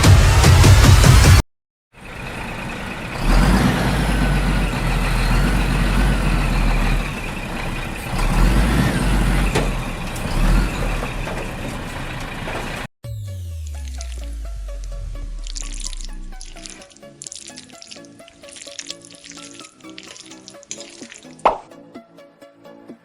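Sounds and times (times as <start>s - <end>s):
tractor engine rumble: 2.0s - 12.9s.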